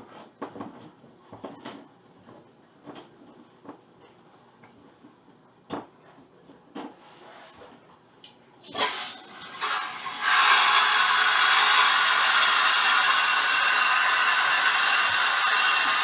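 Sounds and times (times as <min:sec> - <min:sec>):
toilet flushing water rush: 0:08.7 - 0:16.0.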